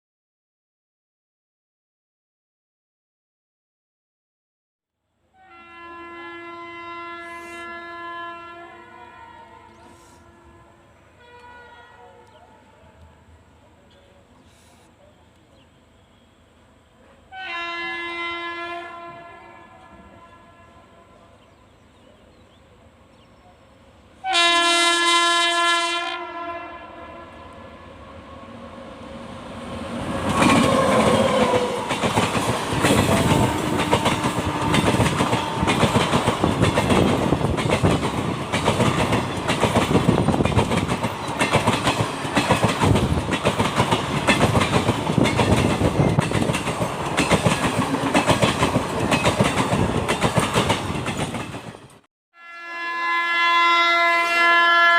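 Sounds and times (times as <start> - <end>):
locomotive horn: 5.3 - 12.7, 17.2 - 21.4, 24.2 - 29.0, 33.1 - 36.2, 52.3 - 54.9
wheels clacking over rail joints: 30.1 - 52.0.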